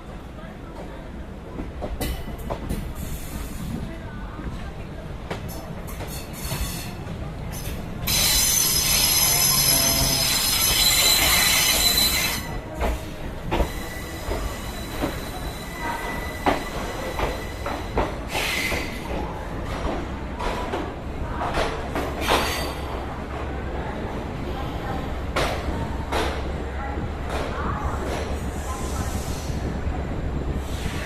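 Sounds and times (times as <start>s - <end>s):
train wheels squealing on rails: 5.9s - 19.2s, 22.2s - 22.9s, 27.8s - 29.7s, 30.6s - 31.0s.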